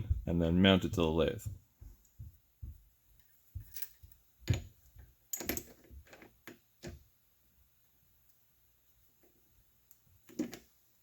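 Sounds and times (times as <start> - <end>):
small tools clicking and knocking: 3.6 - 7.0.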